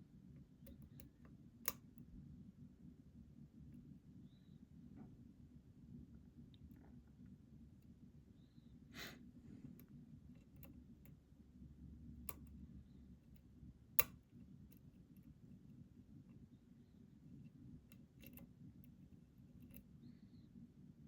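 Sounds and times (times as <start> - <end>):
lock pick clicking: 14.0 - 14.9, 17.9 - 18.5.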